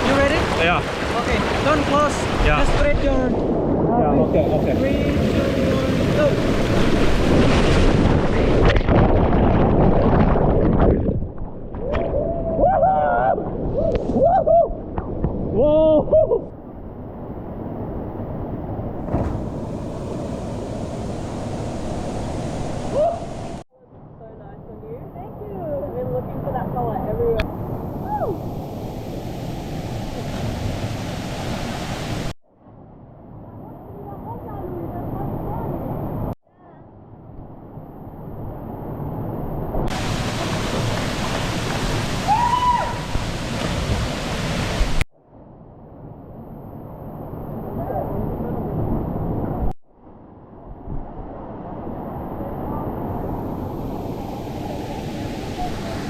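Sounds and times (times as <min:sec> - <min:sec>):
waterfall roaring: 0:00.0 - 0:03.2, 0:39.9 - 0:45.0.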